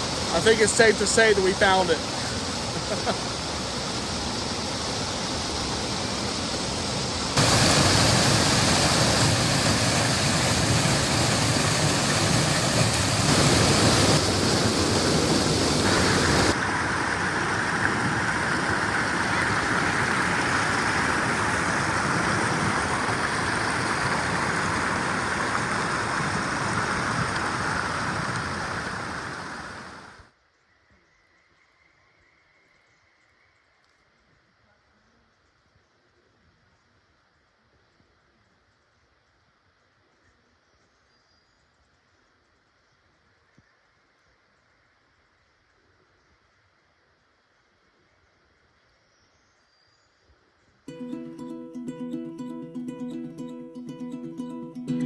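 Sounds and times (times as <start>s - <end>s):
waterfall rushing: 0.0s - 30.2s.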